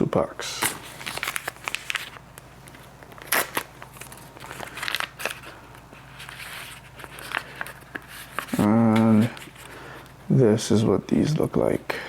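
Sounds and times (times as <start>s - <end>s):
packaging crinkling: 0.6s - 10.1s.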